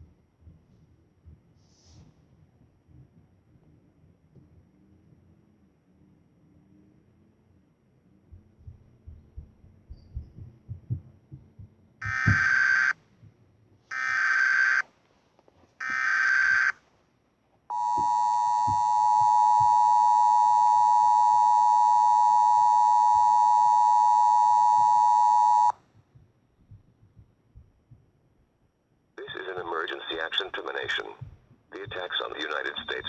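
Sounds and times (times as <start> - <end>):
digital data bursts: 12.0 - 12.9
two-tone attention signal: 17.7 - 25.7.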